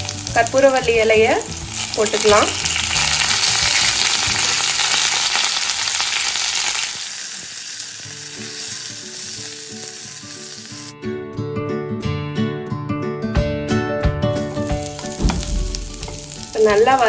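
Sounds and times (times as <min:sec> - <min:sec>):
background music: 0:00.0 - 0:06.1, 0:08.2 - 0:17.0
vegetables sizzling in hot oil: 0:00.0 - 0:10.9, 0:14.6 - 0:17.0.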